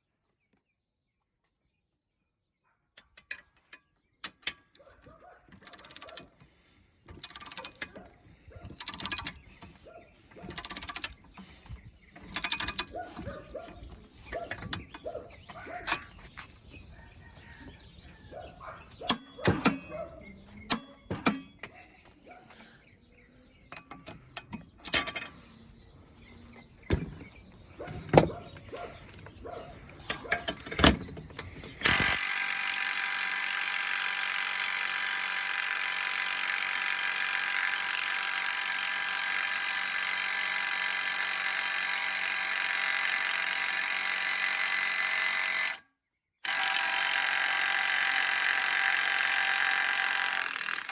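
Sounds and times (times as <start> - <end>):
tools clicking and knocking: 3.0 - 16.5, 18.9 - 20.0, 20.6 - 21.8, 23.6 - 25.6, 27.8 - 50.9
impact wrench hammering: 8.7 - 9.4, 12.2 - 13.2, 31.8 - 45.8.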